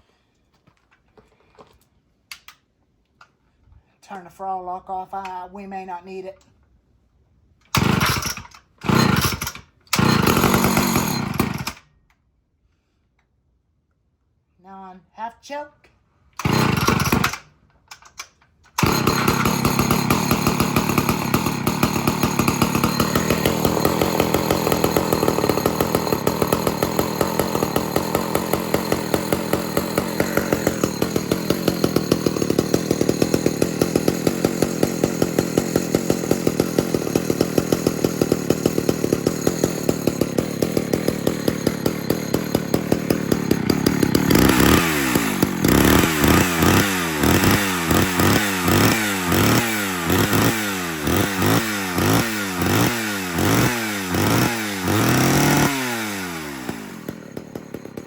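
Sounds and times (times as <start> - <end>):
chainsaw starting and running: 7.6 - 12.2, 16.2 - 58.0.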